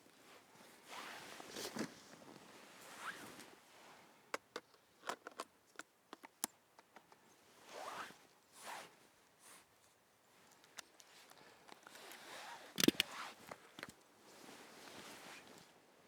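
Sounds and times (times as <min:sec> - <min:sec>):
small sharp clicks of camera lens: 0:12.8 - 0:13.1
zip-like rasps: 0:12.8 - 0:13.2.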